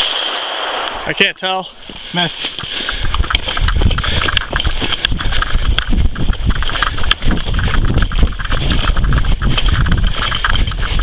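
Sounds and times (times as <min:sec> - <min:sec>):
hurried footsteps: 0:01.2 - 0:11.0
gear thumping and clicking: 0:02.6 - 0:11.0.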